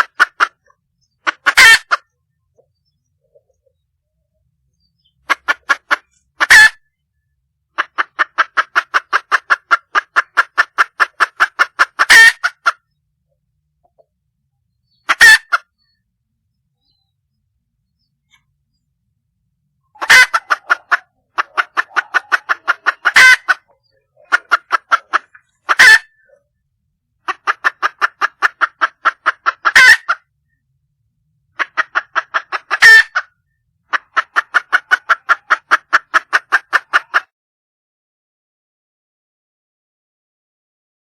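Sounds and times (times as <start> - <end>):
hen clucking: 0.0 - 3.8, 4.8 - 7.0, 7.7 - 13.0, 14.8 - 16.0, 19.8 - 26.5, 27.2 - 30.3, 31.6 - 37.3.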